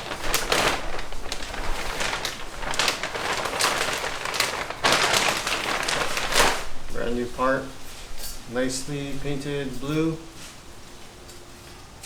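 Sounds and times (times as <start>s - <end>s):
plastic bag crinkling: 0.0s - 7.4s.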